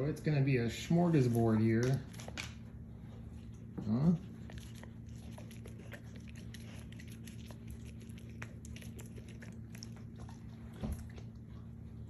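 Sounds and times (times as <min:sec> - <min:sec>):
dog chewing: 0:00.7 - 0:12.0.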